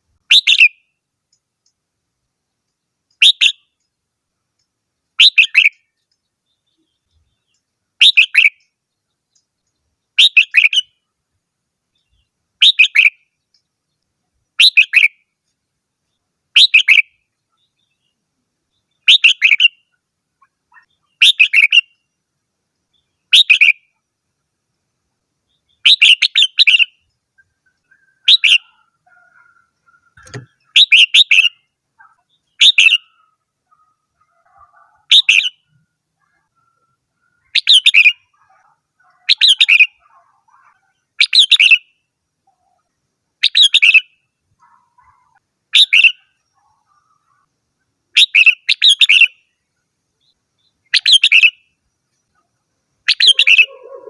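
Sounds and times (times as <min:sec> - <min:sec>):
bird singing whistled phrase: 0:53.1 - 0:53.9.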